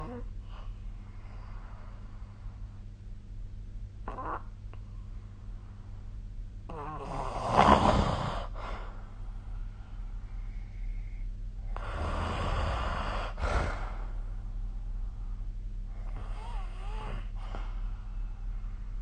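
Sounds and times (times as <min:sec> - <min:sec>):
steady low hum: 0:00.0 - 0:19.0
person snoring: 0:06.7 - 0:08.6, 0:11.7 - 0:14.2, 0:16.0 - 0:17.4.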